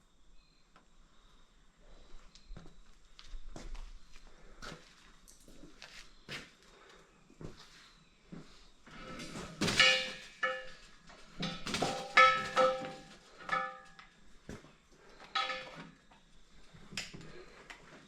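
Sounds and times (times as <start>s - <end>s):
steel parts clanking: 9.0s - 13.9s, 15.3s - 16.0s
ringing metal strikes: 9.6s - 14.0s.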